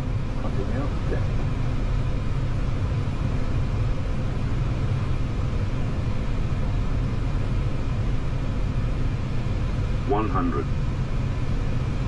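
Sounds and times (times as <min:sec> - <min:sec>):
cockpit airflow and engine rumble: 0:00.0 - 0:12.0.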